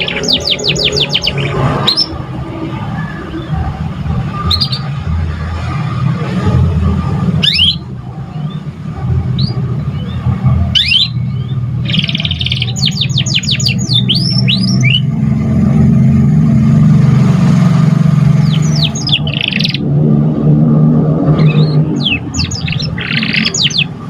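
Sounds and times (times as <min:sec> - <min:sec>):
canary singing: 0:00.0 - 0:05.3, 0:07.3 - 0:16.0, 0:18.2 - 0:20.2, 0:21.2 - 0:24.0.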